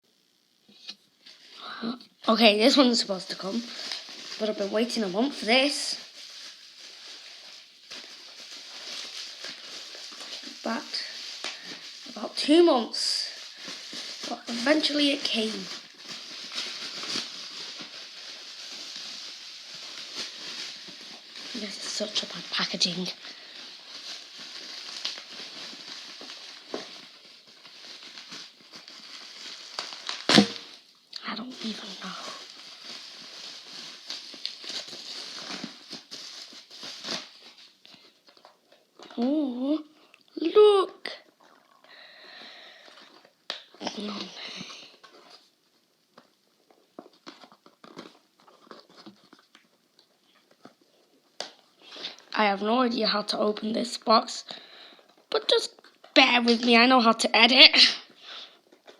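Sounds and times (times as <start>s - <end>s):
packaging crackling and rustling: 2.7s - 39.3s, 42.4s - 52.6s, 58.0s - 58.9s.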